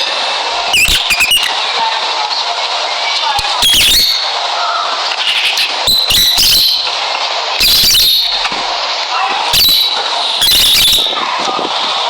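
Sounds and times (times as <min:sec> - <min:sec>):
shrill bird screeches: 0:00.7 - 0:01.6, 0:03.4 - 0:07.0, 0:07.6 - 0:08.6, 0:09.5 - 0:11.2
lovebirds chattering: 0:00.7 - 0:11.4.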